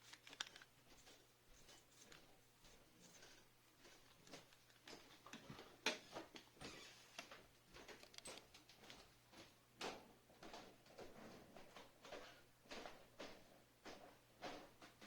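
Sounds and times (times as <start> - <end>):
faint clicks and light knocks: 0.0 - 15.0.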